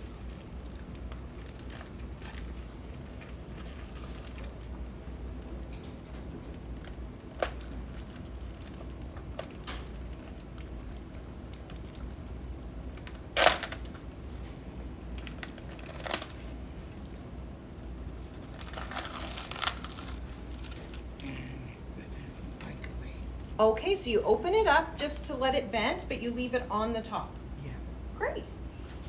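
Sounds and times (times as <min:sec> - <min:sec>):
plastic film crinkling: 0:15.1 - 0:17.2, 0:18.1 - 0:21.1
plastic rustling: 0:15.1 - 0:17.2, 0:18.1 - 0:21.1.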